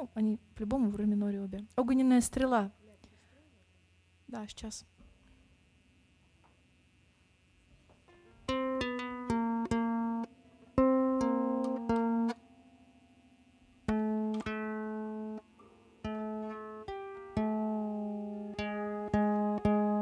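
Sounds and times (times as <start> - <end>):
plucked string instrument: 8.1 - 12.6, 13.8 - 20.0.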